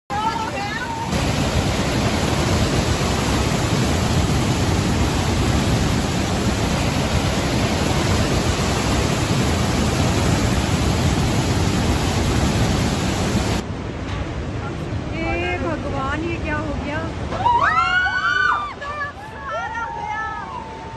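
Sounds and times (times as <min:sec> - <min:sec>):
floodwater rushing: 0:00.1 - 0:15.2.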